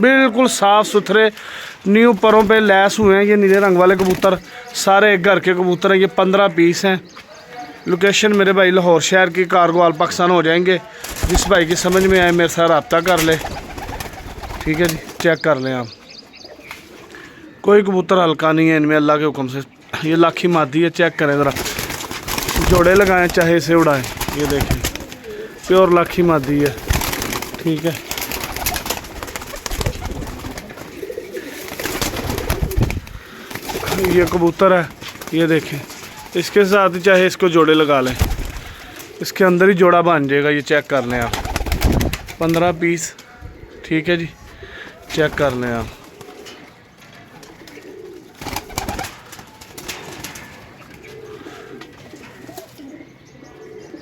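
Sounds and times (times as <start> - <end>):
pigeons cooing: 0.0 - 17.7, 21.2 - 40.1, 40.8 - 54.0
birds clicking and rustling: 1.3 - 5.0, 10.9 - 17.5, 20.4 - 43.4, 44.7 - 53.0.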